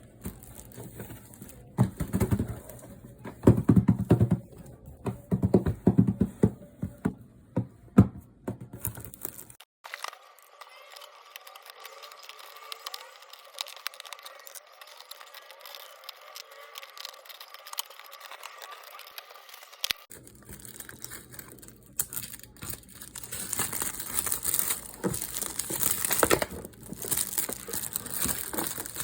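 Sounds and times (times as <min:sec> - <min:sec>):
small hard objects clicking and rattling: 0:12.2 - 0:29.0.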